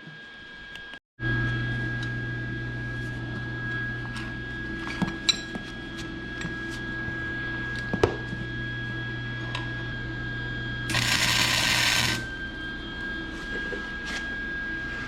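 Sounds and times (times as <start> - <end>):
steady electrical hum: 1.3 - 15.0
arc welding crackle: 10.9 - 12.3.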